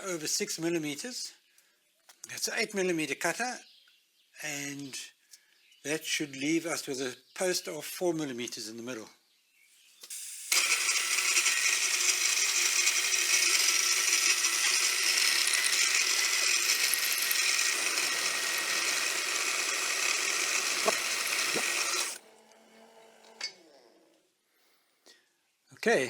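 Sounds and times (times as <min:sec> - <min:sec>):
milling machine cutting steel: 0:10.5 - 0:22.2.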